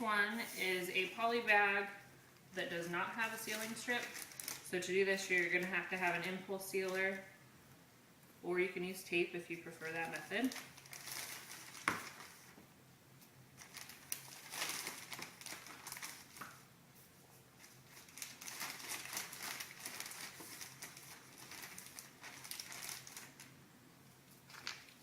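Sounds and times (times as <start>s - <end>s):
plastic bag crinkling: 3.2s - 7.2s, 9.8s - 12.5s, 13.6s - 16.6s, 17.6s - 23.6s, 24.4s - 25.0s.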